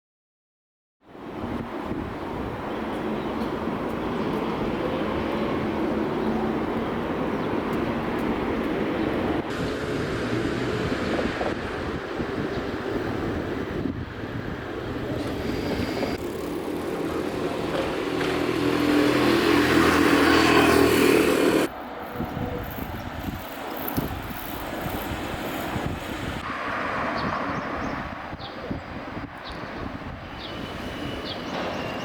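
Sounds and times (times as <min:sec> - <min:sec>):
outdoor background noise: 0:01.0 - 0:32.0
vehicle engine hum: 0:09.4 - 0:26.4.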